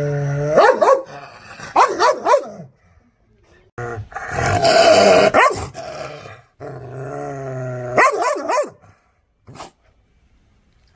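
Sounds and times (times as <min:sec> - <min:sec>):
dog barking: 0:00.6 - 0:02.7, 0:05.3 - 0:05.7, 0:08.0 - 0:08.8
dog growling: 0:03.8 - 0:08.1.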